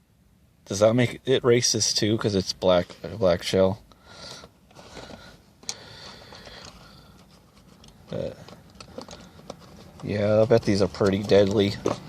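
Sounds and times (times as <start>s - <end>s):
shotgun shell box rustling: 4.7s - 12.0s.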